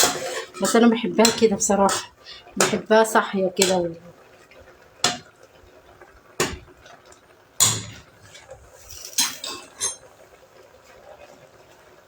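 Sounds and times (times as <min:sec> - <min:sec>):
spoon clanking against pot: 0:00.0 - 0:02.9, 0:03.6 - 0:04.0, 0:07.6 - 0:10.1.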